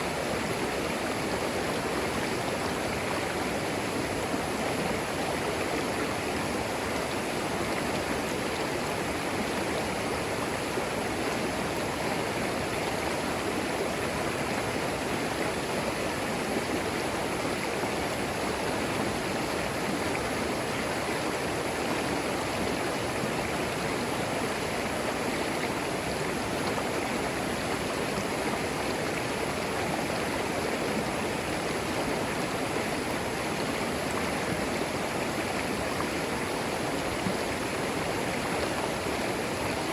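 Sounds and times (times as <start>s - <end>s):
creek water babbling over stones: 0.0s - 39.9s.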